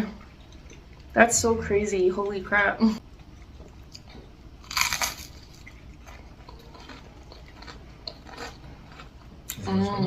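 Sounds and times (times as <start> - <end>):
crunching and chewing: 3.1 - 9.7
crunchy bite into fried food: 4.7 - 5.6.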